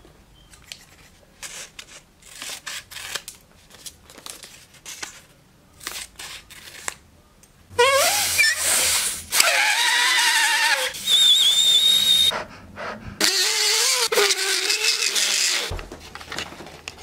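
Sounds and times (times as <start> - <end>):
homemade whistle squealing: 7.8 - 12.4.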